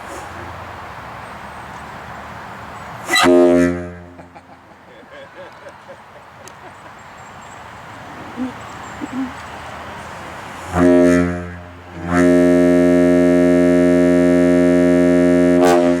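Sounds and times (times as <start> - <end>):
deep ship horn blasts: 3.1 - 4.4, 10.7 - 16.0.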